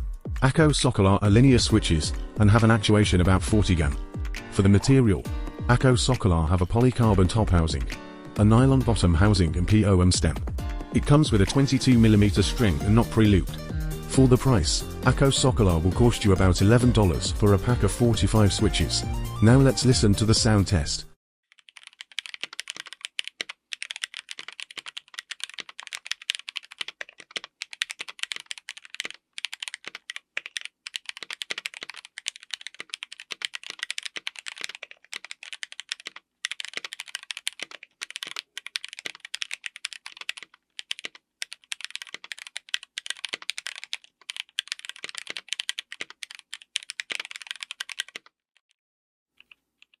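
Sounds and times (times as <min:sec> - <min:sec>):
mechanical keyboard typing: 0:21.5 - 0:48.3.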